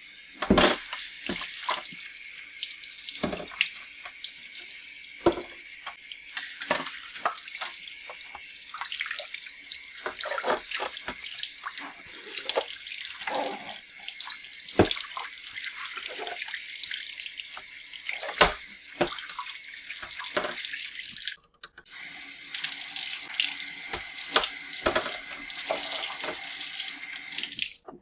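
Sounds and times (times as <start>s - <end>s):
shelves knocking against sink: 0.4s - 1.4s, 3.2s - 3.6s, 5.2s - 5.6s, 14.8s - 15.0s
tap running into sink: 0.4s - 2.0s, 3.1s - 9.3s, 9.9s - 12.8s, 14.7s - 15.2s, 17.5s - 20.8s, 23.8s - 26.6s.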